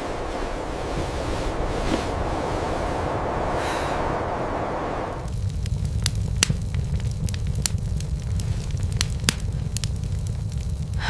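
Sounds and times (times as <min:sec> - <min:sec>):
wood fire crackling and popping: 0:04.8 - 0:11.0.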